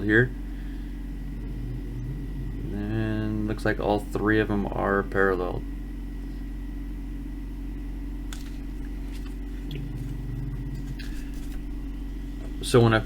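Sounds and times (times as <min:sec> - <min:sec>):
thin high whine: 0:00.0 - 0:05.0
low electrical hum: 0:00.0 - 0:13.0.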